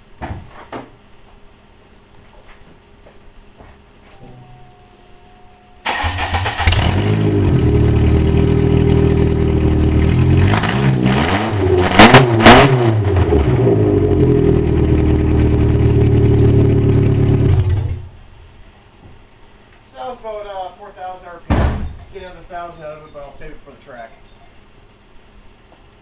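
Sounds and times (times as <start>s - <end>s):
car engine starting and revving: 5.9s - 18.1s.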